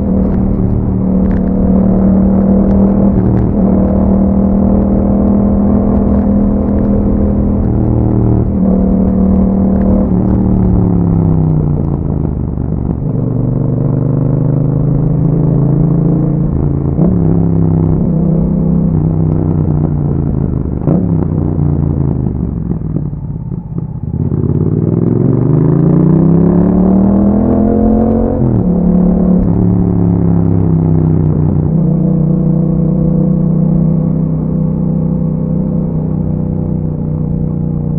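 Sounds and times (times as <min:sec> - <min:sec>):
motorcycle engine revving: 0:00.0 - 0:37.9.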